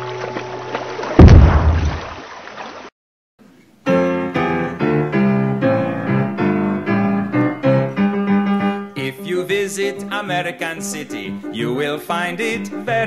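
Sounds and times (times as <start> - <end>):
solo piano chords: 3.9 - 9.2.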